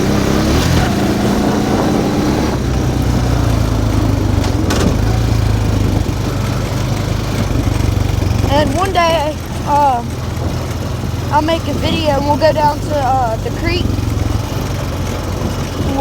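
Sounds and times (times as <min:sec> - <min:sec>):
off-road vehicle engine running: 0:00.0 - 0:16.0
short knocks: 0:04.3 - 0:05.8.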